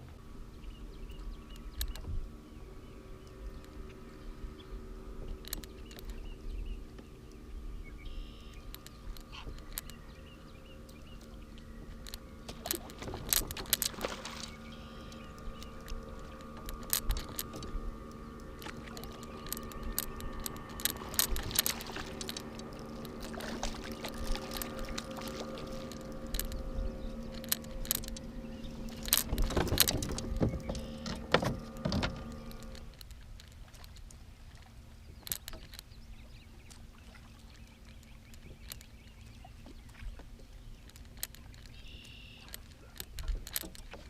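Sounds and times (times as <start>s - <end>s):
motor humming: 0.0s - 44.0s
clicks rattles and knocks: 28.9s - 33.0s.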